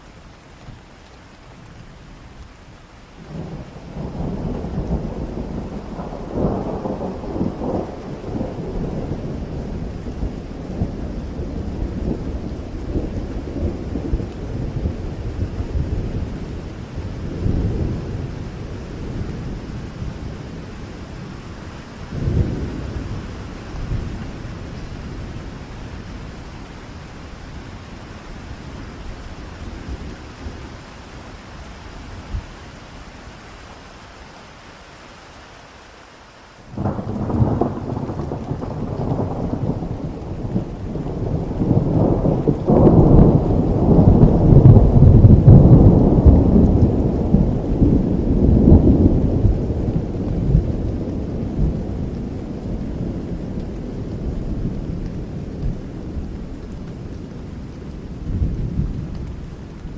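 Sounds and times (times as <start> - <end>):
steady rain: 0.0 - 59.9
thunder clap and deep rumble: 3.3 - 21.3, 22.1 - 26.5, 36.7 - 59.9.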